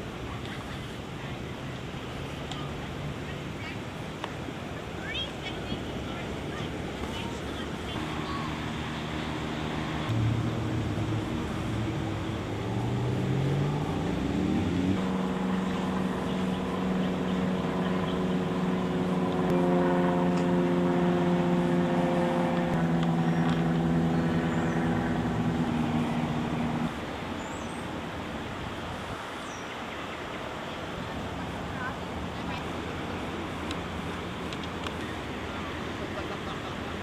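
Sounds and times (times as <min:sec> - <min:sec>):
road noise: 0:00.0 - 0:37.0
car engine running: 0:07.9 - 0:27.6.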